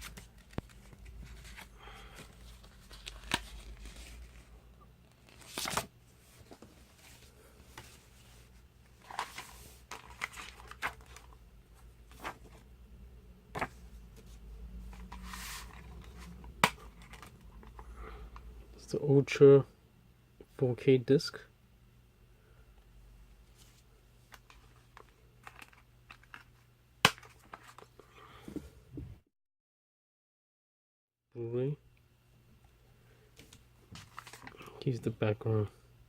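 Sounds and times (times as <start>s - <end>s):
paper rustling: 0.0s - 4.5s, 5.1s - 11.3s, 12.1s - 12.6s, 13.5s - 13.8s, 14.9s - 17.4s, 33.9s - 34.6s.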